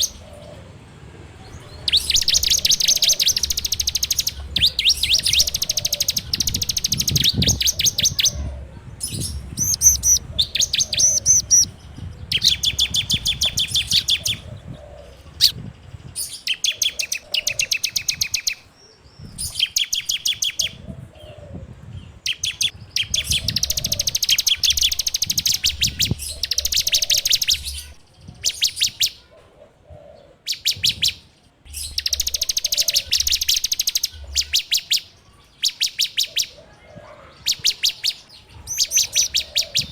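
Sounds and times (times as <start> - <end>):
bird singing buzzing trills: 1.8 - 8.5, 9.1 - 14.8, 22.3 - 28.0, 31.7 - 34.9.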